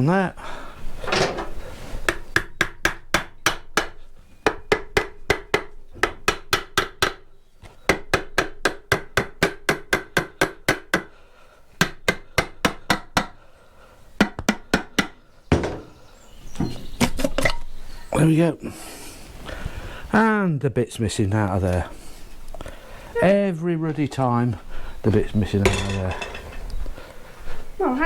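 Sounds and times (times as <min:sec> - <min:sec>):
hammer tapping on metal: 0:07.9 - 0:11.1.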